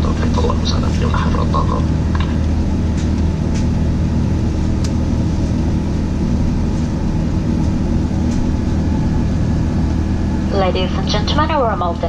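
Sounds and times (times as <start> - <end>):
airliner cabin engine drone: 0.0 - 12.0.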